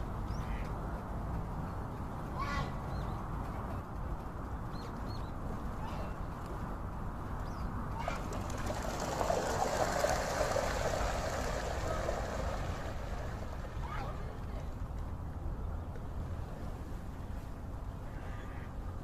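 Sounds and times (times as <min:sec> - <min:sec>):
rushing noise: 0:08.2 - 0:14.5
low rumble: 0:08.4 - 0:15.0.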